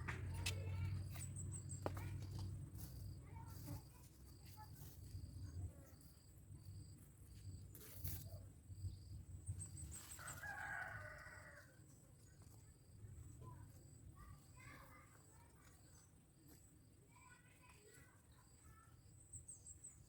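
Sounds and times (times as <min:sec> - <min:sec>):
faint rooster crowing: 0:09.9 - 0:11.9.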